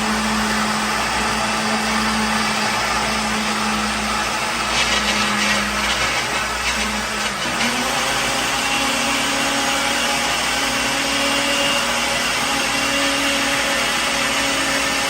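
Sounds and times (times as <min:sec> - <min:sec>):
blender motor humming: 0:00.0 - 0:15.0
rough hissy grinding: 0:04.6 - 0:07.6.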